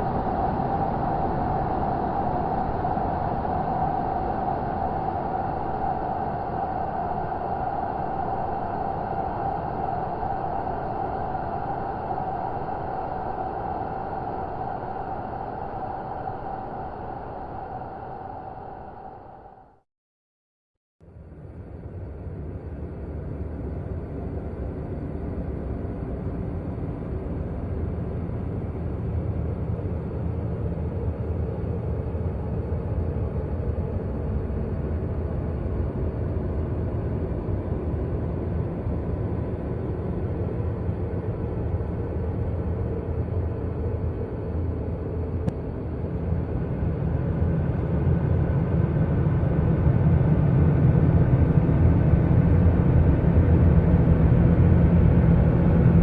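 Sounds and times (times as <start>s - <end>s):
low rumbling drone: 0.0s - 19.8s, 21.0s - 56.0s.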